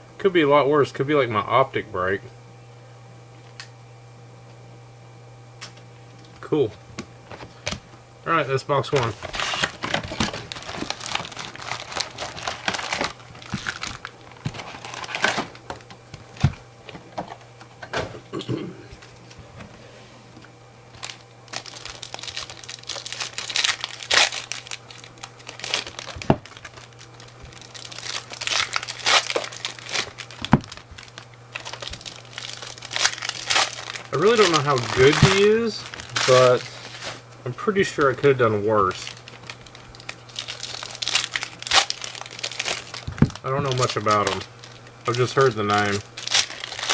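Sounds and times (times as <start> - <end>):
card pack wrappers crinkling: 8.8 - 17.4, 20.9 - 46.9.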